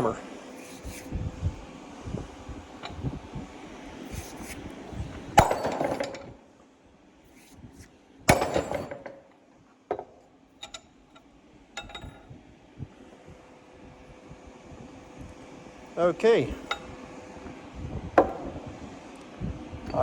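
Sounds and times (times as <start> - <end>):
light metal clinks: 2.8 - 3.1, 10.6 - 10.9, 11.8 - 12.3.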